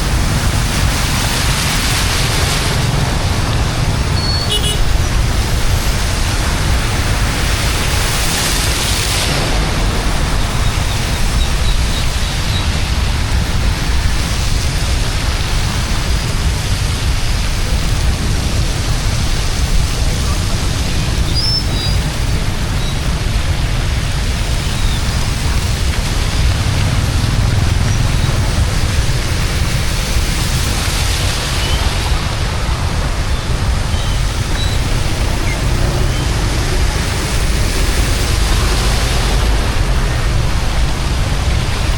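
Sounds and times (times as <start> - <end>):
floodwater rushing and splashing: 0.0 - 41.9
heavy rain: 0.0 - 41.9
deep rumble: 4.8 - 41.9
low rumble: 23.2 - 31.4, 32.2 - 41.9.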